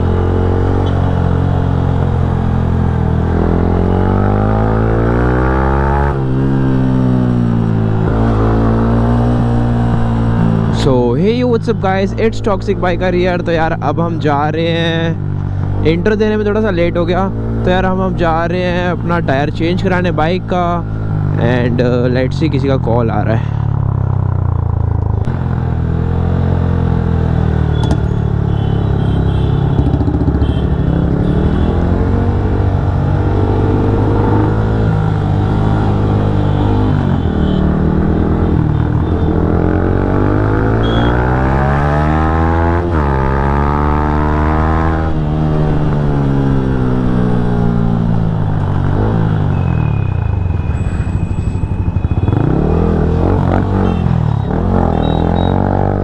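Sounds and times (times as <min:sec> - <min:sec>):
motorcycle engine revving: 0:00.0 - 0:11.1, 0:23.5 - 0:56.0.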